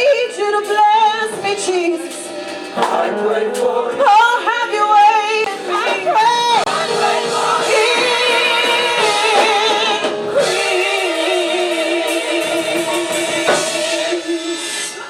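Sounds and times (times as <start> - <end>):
vocal group singing: 0.0 - 15.0.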